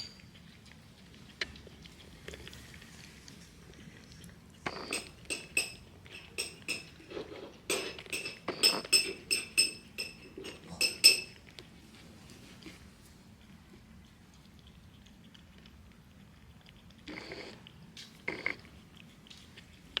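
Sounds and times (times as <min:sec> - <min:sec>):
food bowl clinking: 0:00.0 - 0:00.4, 0:04.7 - 0:11.4.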